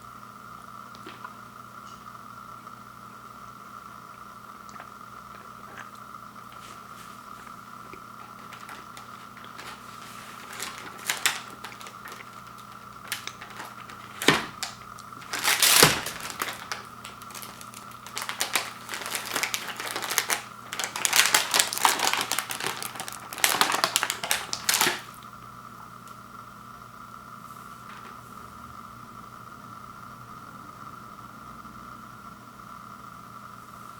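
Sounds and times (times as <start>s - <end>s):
plastic packaging crinkling: 6.5s - 25.2s.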